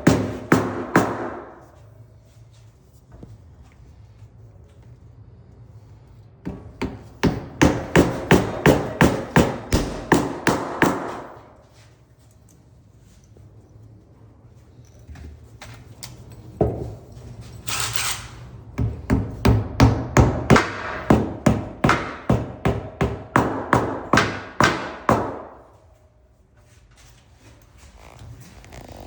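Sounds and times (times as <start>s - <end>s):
sharp evenly spaced knocks: 0.0s - 1.6s, 6.4s - 11.4s, 18.8s - 25.6s.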